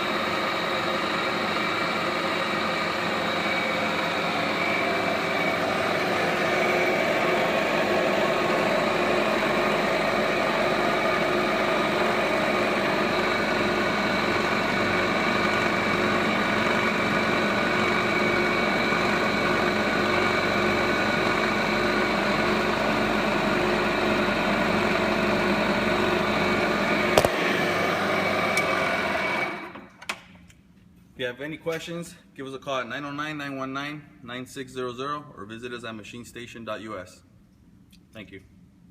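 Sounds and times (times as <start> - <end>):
milling machine drone: 0.0 - 29.8
sharp click: 27.2 - 27.4.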